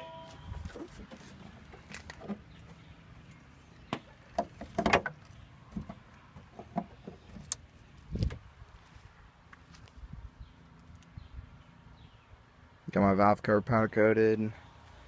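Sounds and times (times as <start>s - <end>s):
handling knocks and clicks: 0.8s - 7.6s.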